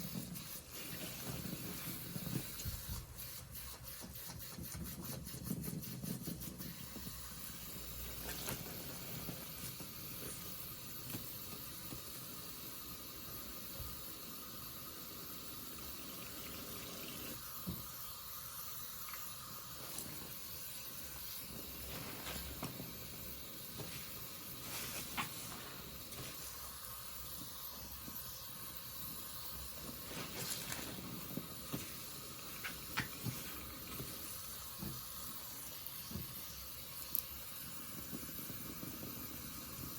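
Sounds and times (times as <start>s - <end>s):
sponge squeezed with fizzing lather: 0.0s - 12.3s, 15.5s - 39.9s.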